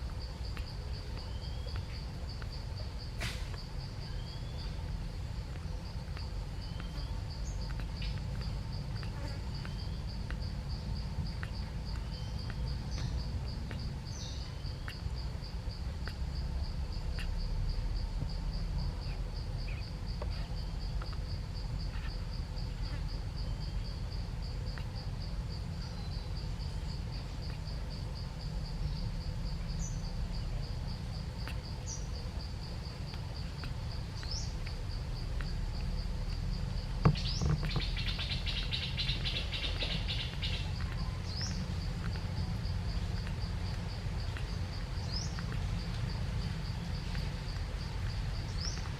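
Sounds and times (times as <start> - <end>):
insects trilling: 0.0 - 48.9.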